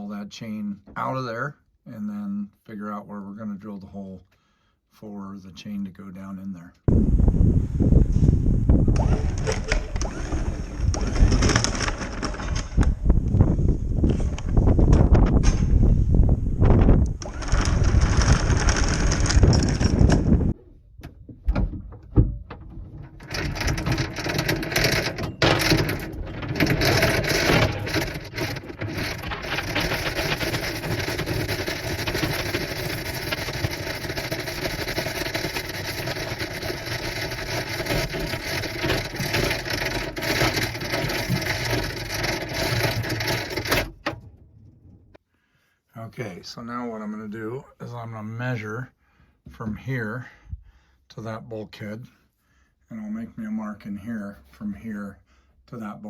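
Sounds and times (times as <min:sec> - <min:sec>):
anchor chain clattering: 0:09.0 - 0:13.0, 0:17.2 - 0:20.4, 0:22.6 - 0:44.2
metal clanks: 0:21.5 - 0:44.4.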